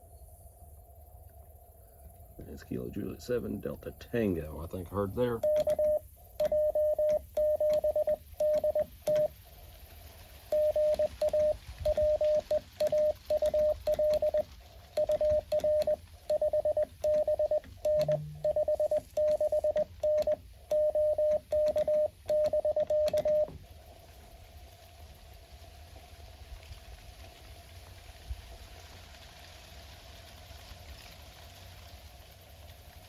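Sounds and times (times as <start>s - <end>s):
faint receiver hiss: 1.2s - 25.1s
morse code tone: 5.1s - 9.4s, 10.5s - 23.6s.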